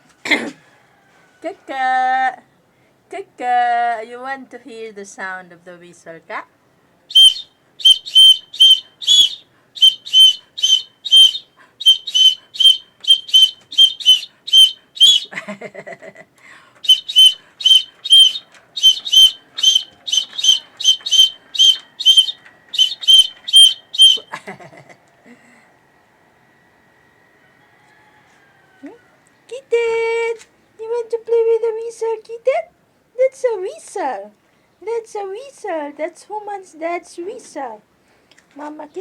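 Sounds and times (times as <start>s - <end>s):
whistle toots: 7.1s - 15.3s, 16.8s - 24.3s.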